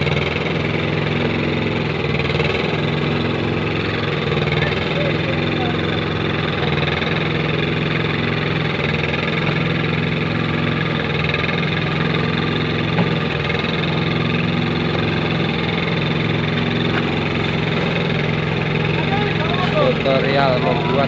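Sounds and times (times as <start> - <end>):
machine engine running steadily: 0.0 - 21.0.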